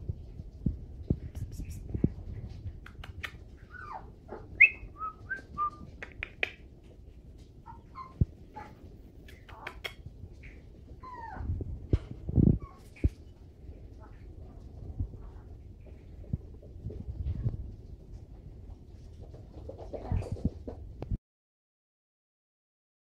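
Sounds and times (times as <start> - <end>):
puppies squeaking and whining: 3.5 - 5.8, 7.7 - 9.6, 10.4 - 11.6, 12.5 - 13.2.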